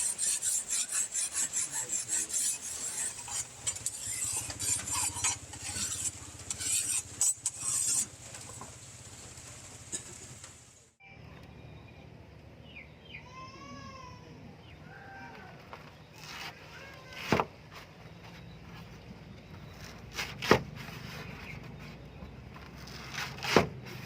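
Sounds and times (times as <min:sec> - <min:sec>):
file scraping steel blade: 0:00.0 - 0:08.6.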